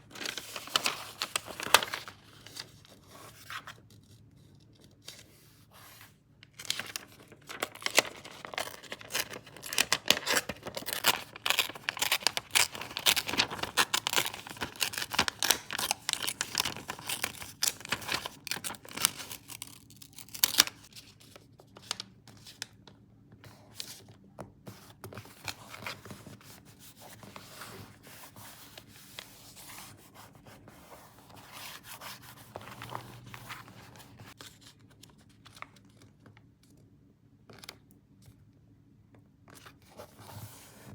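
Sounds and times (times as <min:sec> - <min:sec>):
paper tearing and crinkling: 0:00.1 - 0:02.6, 0:06.6 - 0:20.9.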